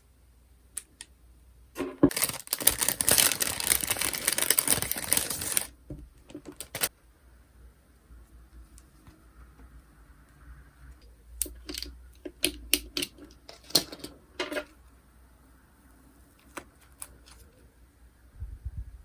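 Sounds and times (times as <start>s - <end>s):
plastic packaging clicks and crinkles: 1.8s - 6.9s, 11.4s - 14.8s, 16.4s - 17.6s.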